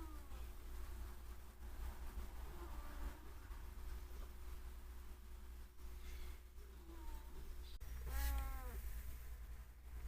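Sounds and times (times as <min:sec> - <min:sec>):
cat meowing: 0:08.0 - 0:08.8.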